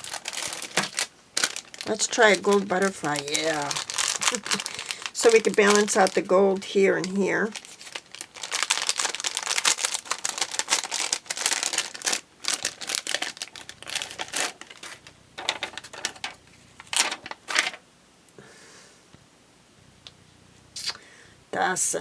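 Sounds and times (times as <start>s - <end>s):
plastic packaging and paper crinkling: 0.0s - 17.8s.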